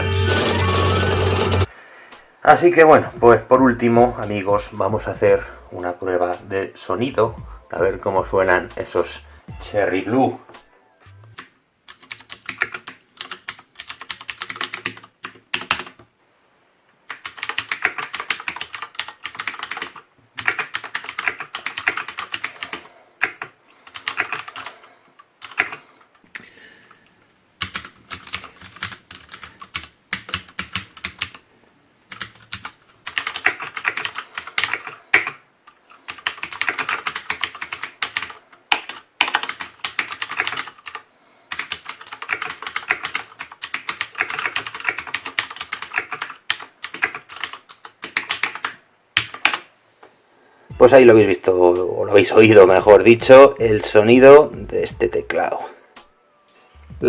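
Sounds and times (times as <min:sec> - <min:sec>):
mechanical keyboard typing: 0:11.3 - 0:16.0, 0:17.1 - 0:24.8, 0:25.4 - 0:25.8, 0:27.6 - 0:31.4, 0:32.1 - 0:35.4, 0:36.1 - 0:49.7.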